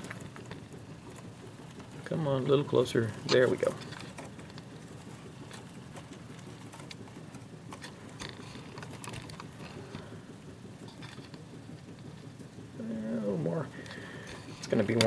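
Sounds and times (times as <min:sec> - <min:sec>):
steady low hum: 0:00.0 - 0:15.0
small clicks and taps: 0:13.8 - 0:15.0.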